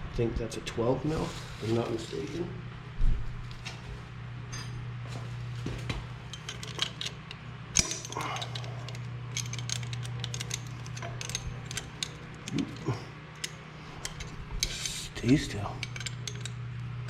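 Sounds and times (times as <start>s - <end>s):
hand tool clinking on nut: 6.3s - 12.8s, 13.4s - 16.6s.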